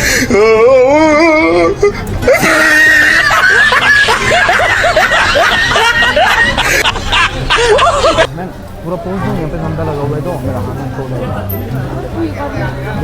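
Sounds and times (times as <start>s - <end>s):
music: 0.0s - 13.0s
people chattering: 0.0s - 13.0s
people laughing: 1.5s - 8.3s.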